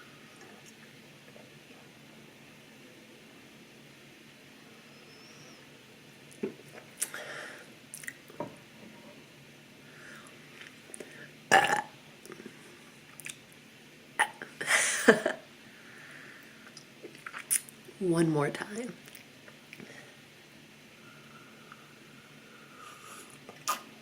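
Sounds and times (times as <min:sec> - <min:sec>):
woman burping: 0:11.5 - 0:11.9, 0:14.2 - 0:15.4.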